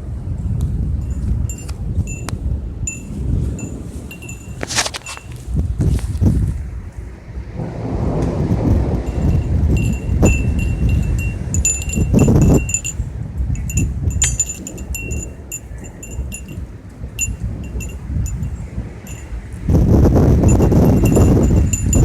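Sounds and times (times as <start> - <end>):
low rumble of storm wind: 0.0 - 22.0
metal wind chimes ringing: 1.0 - 5.5, 9.0 - 19.5, 20.4 - 22.0.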